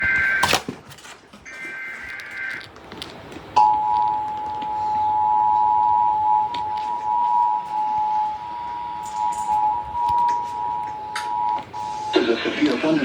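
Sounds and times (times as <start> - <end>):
two-tone attention signal: 3.6 - 12.6.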